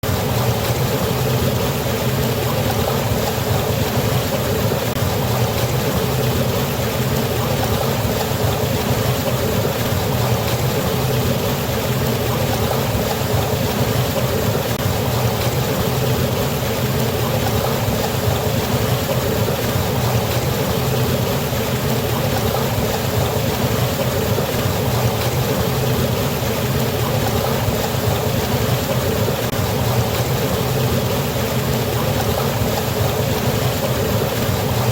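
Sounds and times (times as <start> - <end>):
waterfall rushing: 0.0 - 34.9.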